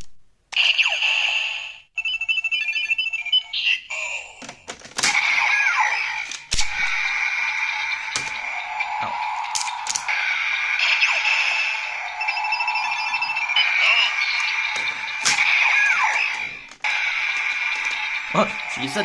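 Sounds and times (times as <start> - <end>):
toy beeping tones: 2.0 - 4.1, 10.1 - 16.6
electronic standby tune: 7.0 - 16.6.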